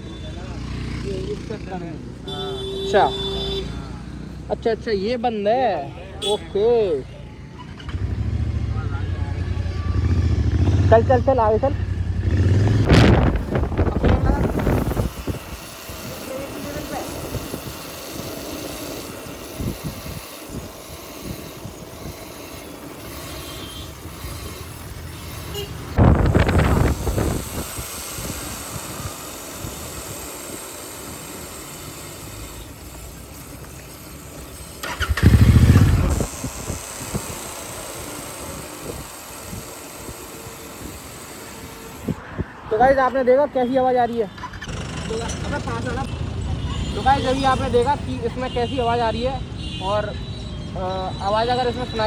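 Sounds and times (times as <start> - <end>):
motorcycle brake juddering: 32.2 - 41.0.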